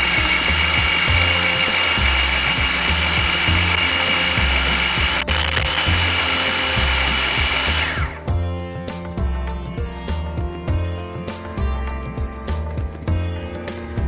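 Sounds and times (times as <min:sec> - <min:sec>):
electric mixer whining: 0:00.0 - 0:08.4
background music with bass: 0:00.0 - 0:14.0.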